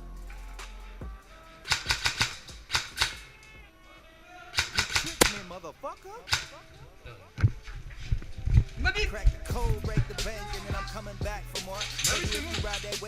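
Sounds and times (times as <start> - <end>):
rap music: 0.0 - 13.0
airsoft gun firing cracks: 1.7 - 3.3, 4.6 - 5.4.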